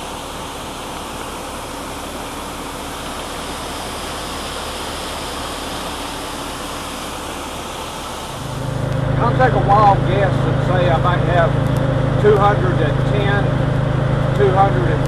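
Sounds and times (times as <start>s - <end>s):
harvester rushing noise: 0.0s - 15.0s
low engine drone: 0.0s - 15.0s.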